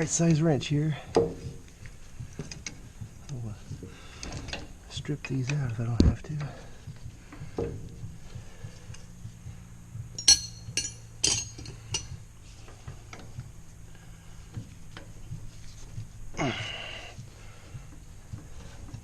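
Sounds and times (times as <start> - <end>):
wrench clinking on metal fittings: 10.2 - 12.2.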